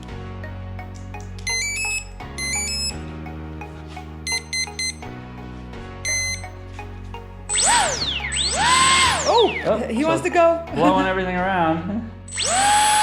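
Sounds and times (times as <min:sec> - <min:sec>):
background music with low bass: 0:00.0 - 0:13.0
motor start-up beeps: 0:01.5 - 0:03.0, 0:04.3 - 0:05.1, 0:06.1 - 0:06.5, 0:07.5 - 0:09.8, 0:12.3 - 0:13.0.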